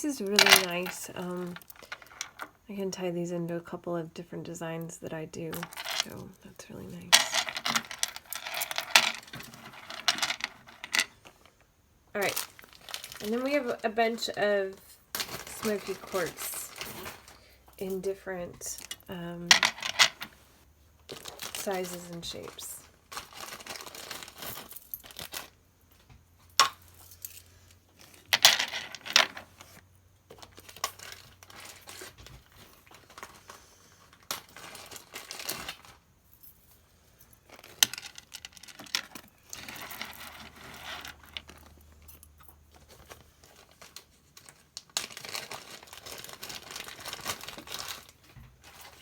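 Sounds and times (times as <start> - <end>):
beads knocking together: 0.2 - 2.6, 6.9 - 11.2, 18.8 - 20.3
plastic bags crinkling: 6.9 - 11.5, 12.2 - 20.4, 21.0 - 25.6, 28.0 - 36.1, 37.4 - 49.0.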